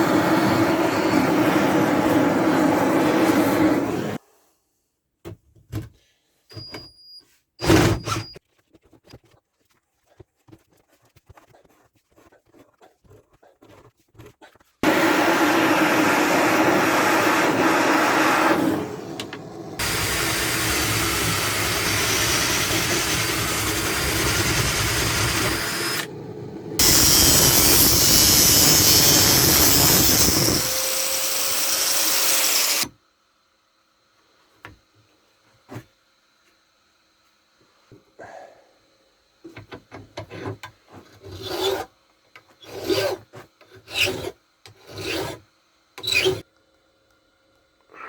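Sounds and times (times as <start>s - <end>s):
power tool running: 14.8s - 32.9s.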